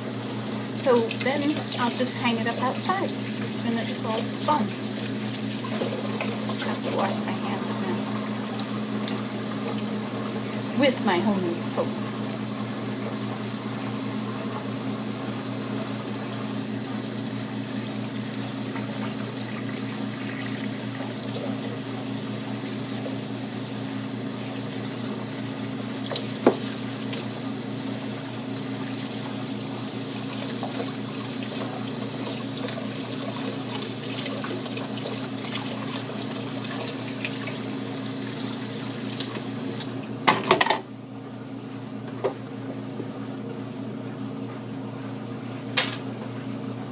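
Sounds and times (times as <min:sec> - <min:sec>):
tap water running into sink: 0:00.0 - 0:39.9.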